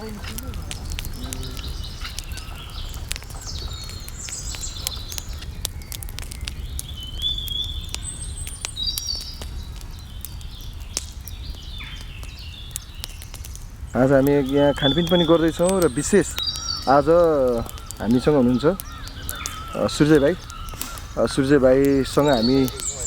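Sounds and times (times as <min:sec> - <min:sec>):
sharp clicks: 0:00.0 - 0:06.9, 0:07.5 - 0:23.0
steady low rumble: 0:00.0 - 0:07.0
birds chirping and trilling: 0:00.0 - 0:23.0.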